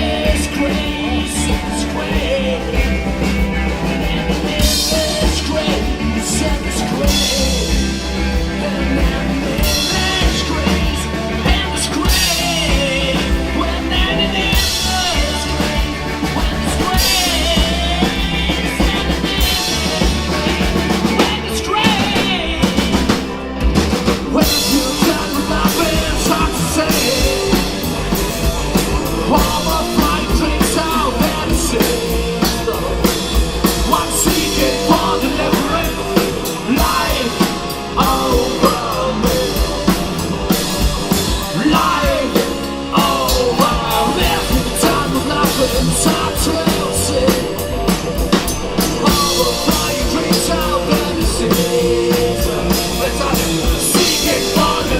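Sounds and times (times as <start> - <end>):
fast drum-kit beat: 0.0 - 54.9
punk rock band playing live: 0.0 - 54.9.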